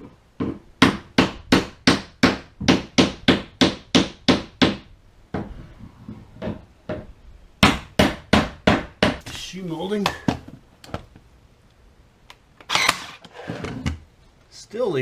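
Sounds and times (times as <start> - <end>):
hammer striking nails into wood: 0.4 - 5.5, 6.4 - 9.2.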